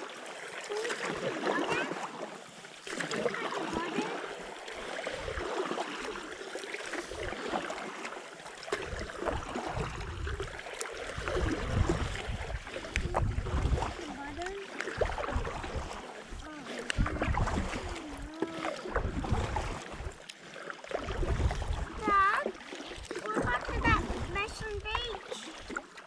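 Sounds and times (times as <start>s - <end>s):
water splashing and gurgling: 0.0s - 26.0s.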